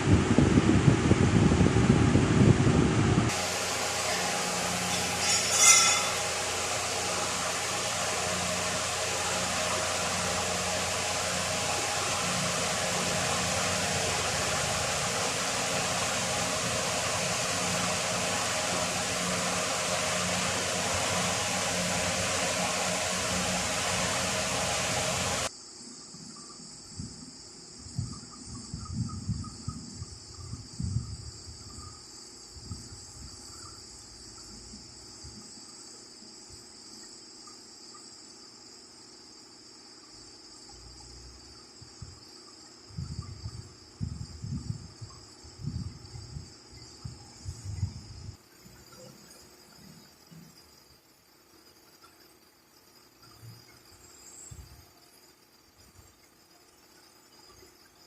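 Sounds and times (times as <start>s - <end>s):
crickets chirping: 0.0s - 58.0s
loud machine running: 0.2s - 25.5s.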